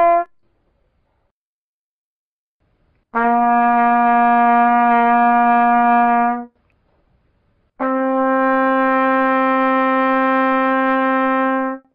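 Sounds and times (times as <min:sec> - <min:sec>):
trumpet playing long notes: 0:00.0 - 0:00.3, 0:03.2 - 0:06.5, 0:07.8 - 0:11.9.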